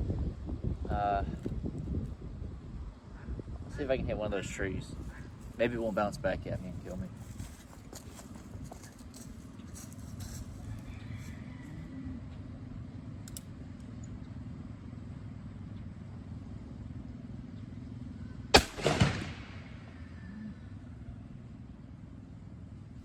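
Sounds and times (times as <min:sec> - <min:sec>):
wind on microphone: 0:00.0 - 0:11.0
revolver gunshot: 0:18.5 - 0:19.9.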